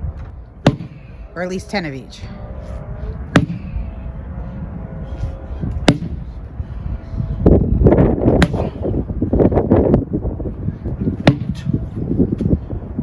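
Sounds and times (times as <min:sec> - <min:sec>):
wind buffeting microphone: 0:00.0 - 0:13.0
sledgehammer striking a tire: 0:00.6 - 0:01.2, 0:03.3 - 0:03.8, 0:05.8 - 0:06.3, 0:08.3 - 0:08.9, 0:11.2 - 0:11.8.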